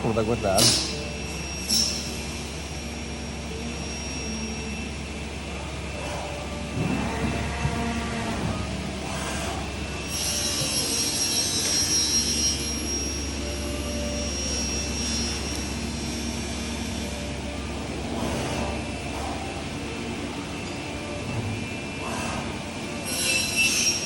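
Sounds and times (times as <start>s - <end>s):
high whine: 0.0s - 24.0s
low machine hum: 0.0s - 24.0s
saw machining aluminium: 0.1s - 4.9s, 9.0s - 17.3s, 22.0s - 24.0s.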